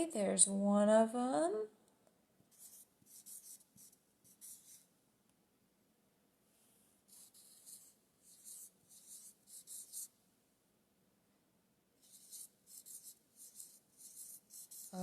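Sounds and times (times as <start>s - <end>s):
scratchy handwriting strokes: 2.5s - 4.9s, 7.1s - 10.1s, 12.0s - 15.0s.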